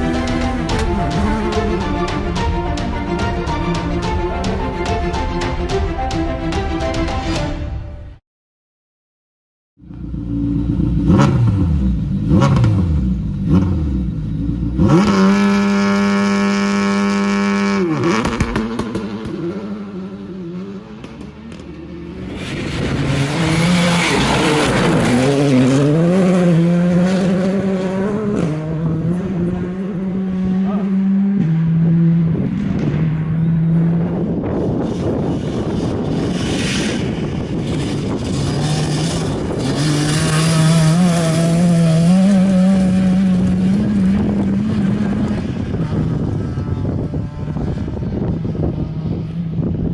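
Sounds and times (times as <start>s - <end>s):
rally car engine revving: 0.0s - 5.6s, 9.8s - 49.9s
loud rush of noise: 0.0s - 6.4s.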